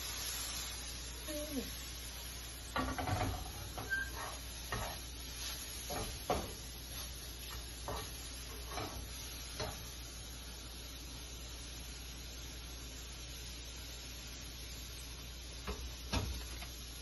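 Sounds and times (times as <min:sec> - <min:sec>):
utensil knocking on cookware: 0:05.9 - 0:06.6.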